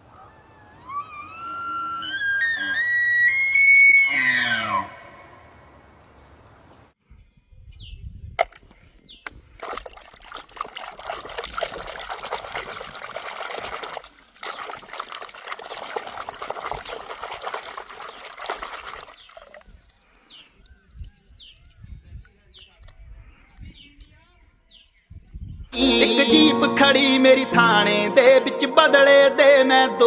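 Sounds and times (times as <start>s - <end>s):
water pouring and splashing: 9.5s - 19.8s.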